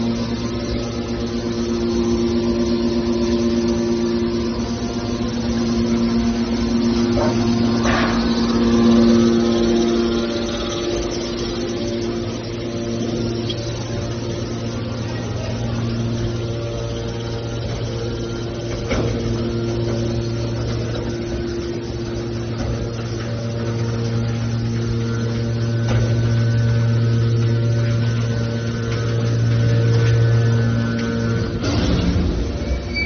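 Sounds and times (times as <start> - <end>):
hydraulic baler humming: 0.0 - 33.0.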